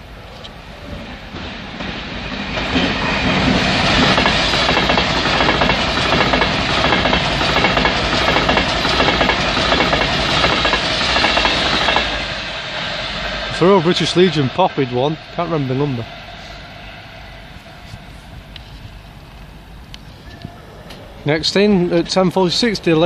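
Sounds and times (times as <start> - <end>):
train rushing past: 0.0 - 23.0
wheels clattering over rail joints: 0.8 - 12.0.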